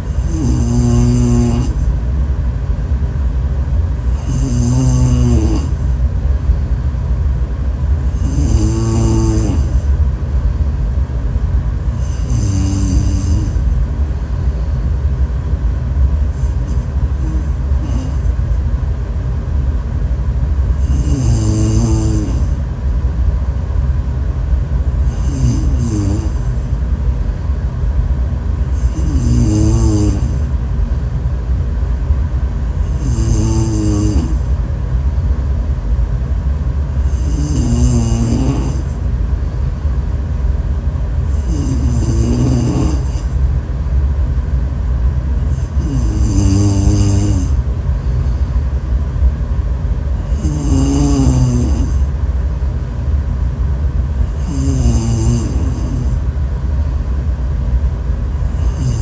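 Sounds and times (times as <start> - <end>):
person snoring: 0.0 - 1.9, 4.1 - 5.8, 8.0 - 9.9, 12.0 - 13.8, 16.3 - 18.4, 20.8 - 22.6, 25.0 - 26.7, 28.7 - 30.5, 32.8 - 34.5, 37.0 - 39.0, 41.3 - 43.4, 45.4 - 47.6, 50.2 - 52.1, 54.2 - 56.2, 58.4 - 59.0
steady low rumble: 0.0 - 59.0.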